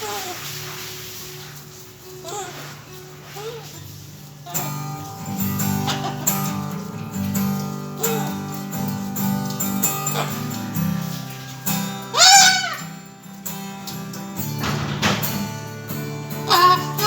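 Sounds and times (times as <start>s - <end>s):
acoustic guitar strumming chords: 0.0s - 17.0s
cockatoo call: 2.0s - 13.1s, 16.4s - 17.0s.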